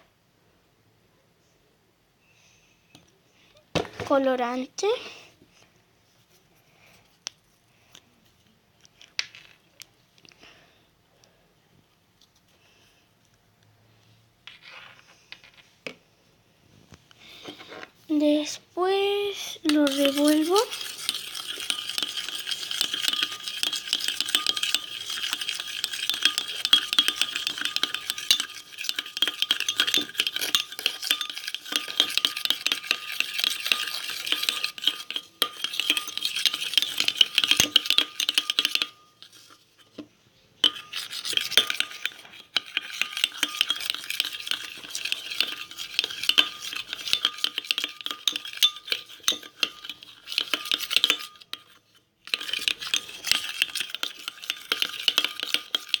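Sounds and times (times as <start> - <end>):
spoon scraping a bowl: 17.2 - 56.0.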